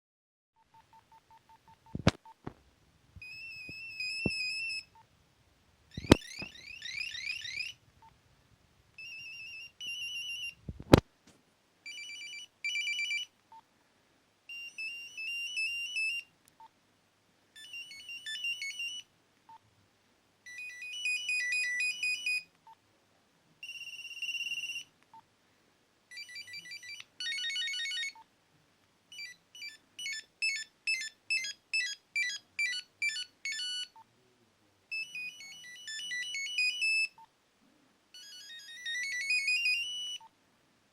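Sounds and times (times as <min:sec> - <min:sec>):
mobile phone monophonic ringtones: 0:03.2 - 0:05.0, 0:05.9 - 0:07.8, 0:09.0 - 0:10.6, 0:11.9 - 0:13.3, 0:14.5 - 0:16.3, 0:17.6 - 0:19.1, 0:20.5 - 0:22.5, 0:23.6 - 0:24.9, 0:26.1 - 0:28.2, 0:29.1 - 0:34.0, 0:34.9 - 0:37.2, 0:38.2 - 0:40.3.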